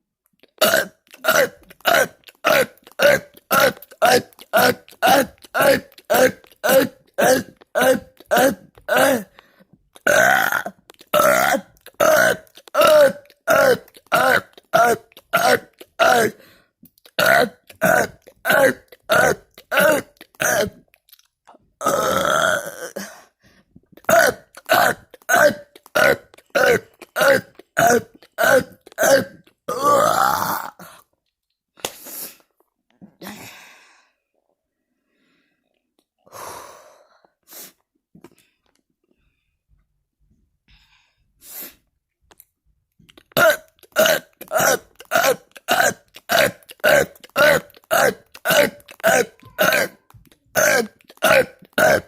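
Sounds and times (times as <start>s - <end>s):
person burping: 0.4s - 9.4s, 10.0s - 20.9s, 21.5s - 23.2s, 23.9s - 31.1s, 43.1s - 52.0s.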